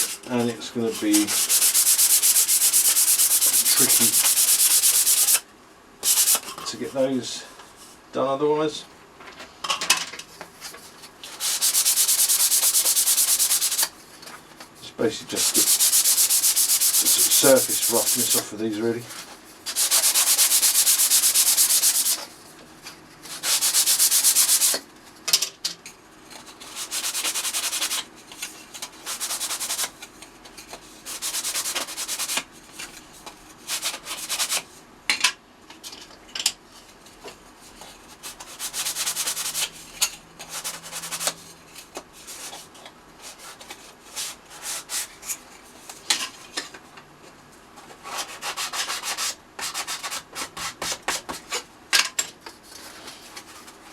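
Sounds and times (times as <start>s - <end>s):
hand sanding plywood: 0.0s - 0.2s, 0.8s - 5.4s, 6.0s - 6.4s, 11.3s - 13.9s, 15.3s - 18.5s, 19.7s - 22.3s, 23.3s - 24.8s, 26.7s - 28.1s, 29.0s - 29.9s, 31.1s - 32.5s, 33.6s - 34.6s, 38.2s - 39.7s, 40.5s - 41.4s, 48.0s - 51.5s.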